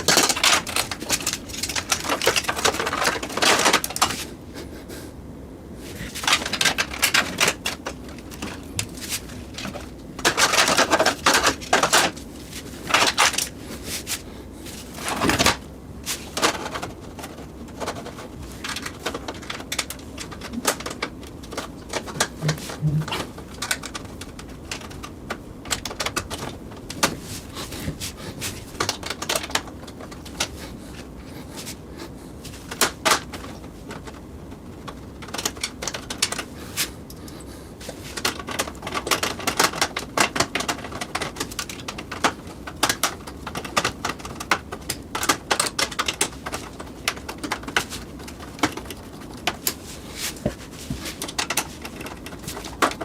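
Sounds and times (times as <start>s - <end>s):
pc case parts clicking and tapping: 6.2s - 12.2s, 16.2s - 31.1s, 32.5s - 36.5s, 38.1s - 53.0s.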